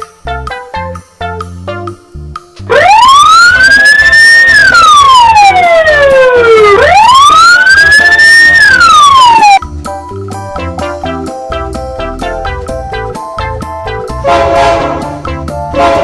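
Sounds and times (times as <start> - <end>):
emergency siren wailing: 2.7 - 9.6.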